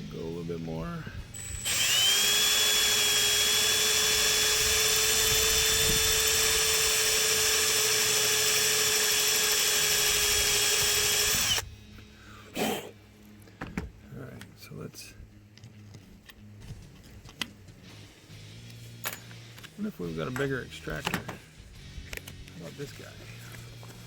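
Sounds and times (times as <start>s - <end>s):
power drill whining: 1.3s - 11.7s.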